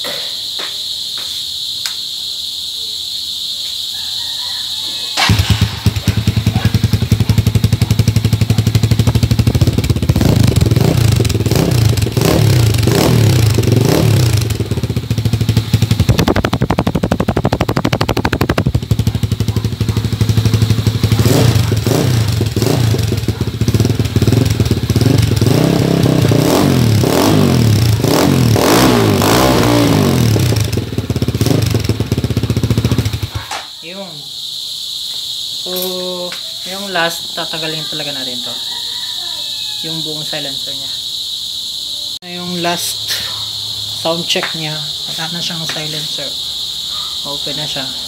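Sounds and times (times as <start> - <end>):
motorcycle engine revving: 5.2 - 33.6.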